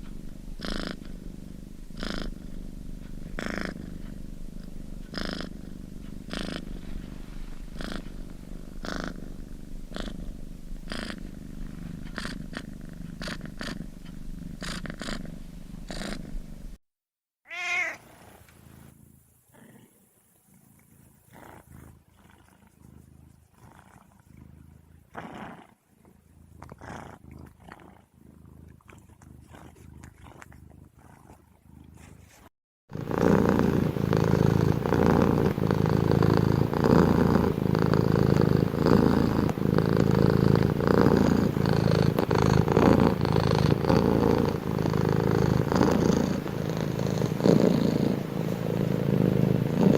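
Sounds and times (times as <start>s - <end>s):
cat purring: 0.0s - 16.8s, 17.5s - 49.9s
cat meow: 17.4s - 18.1s.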